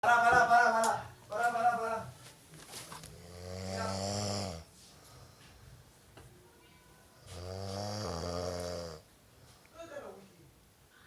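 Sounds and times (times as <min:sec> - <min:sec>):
man snoring loudly: 0:03.1 - 0:04.7, 0:07.3 - 0:09.0.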